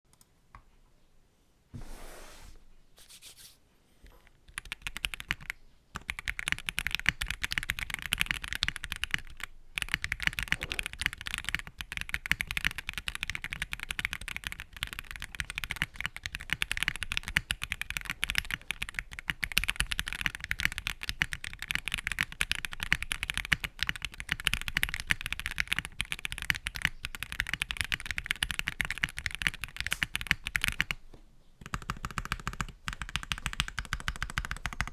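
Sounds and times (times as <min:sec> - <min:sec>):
faint handling noise: 0:01.7 - 0:04.4
fast typing on mechanical keyboard: 0:04.5 - 0:31.0, 0:31.6 - 0:34.9.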